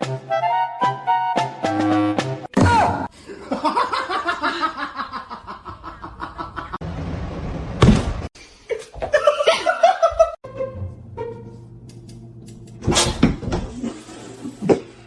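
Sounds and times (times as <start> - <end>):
person laughing: 3.2 - 6.8, 8.7 - 10.4.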